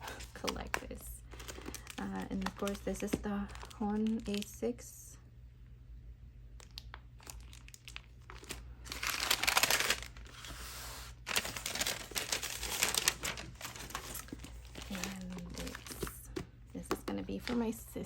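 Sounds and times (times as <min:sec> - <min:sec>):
packaging crinkling: 0:00.0 - 0:04.6, 0:06.6 - 0:16.4.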